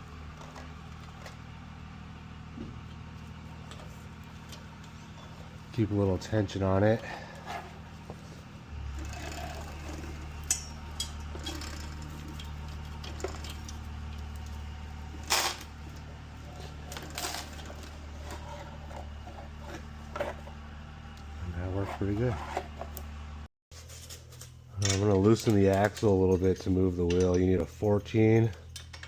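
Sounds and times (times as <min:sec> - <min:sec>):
steady low hum: 0:00.0 - 0:29.0
drive chain metal clicks: 0:24.8 - 0:29.0.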